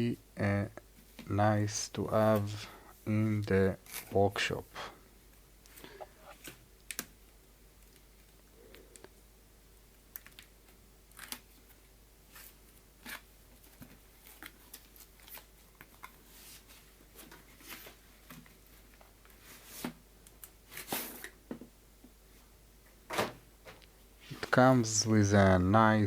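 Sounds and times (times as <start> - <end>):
packaging rustling: 12.4 - 19.4.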